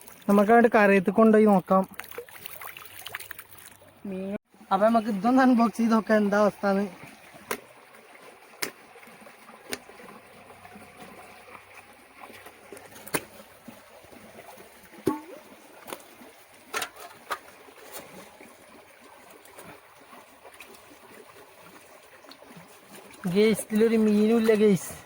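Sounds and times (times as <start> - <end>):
water trickling and splashing: 0.0 - 25.0.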